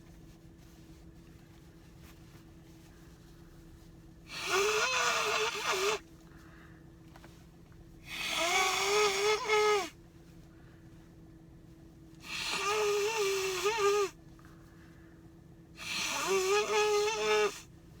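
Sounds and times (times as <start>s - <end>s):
honking nose blows: 4.3s - 6.0s, 8.0s - 10.0s, 12.2s - 14.2s, 15.8s - 17.7s.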